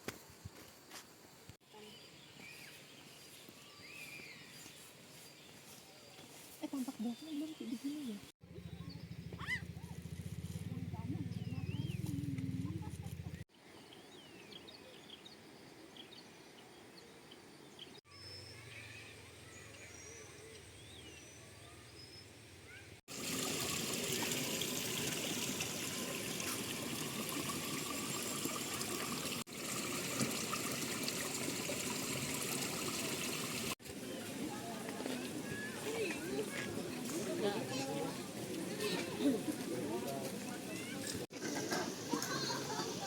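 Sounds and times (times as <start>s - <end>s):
small birds chirping: 1.7s - 10.1s, 11.0s - 23.0s
flowing water rushing: 23.1s - 33.8s.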